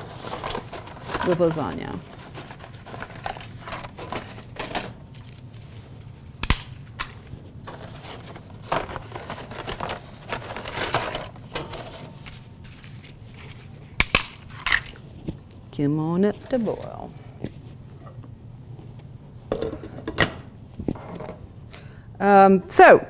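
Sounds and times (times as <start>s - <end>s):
crinkling and handling noise: 0.0s - 21.8s
dry noodles snapping: 6.4s - 7.2s.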